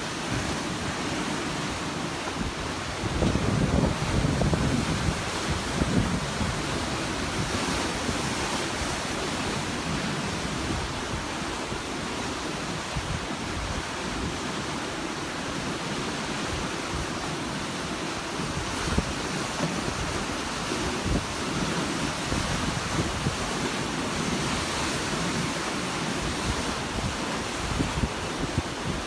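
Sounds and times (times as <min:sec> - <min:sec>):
sea waves washing on shore: 0:00.0 - 0:29.0
wind buffeting microphone: 0:02.3 - 0:11.9, 0:18.4 - 0:25.5, 0:26.1 - 0:29.0.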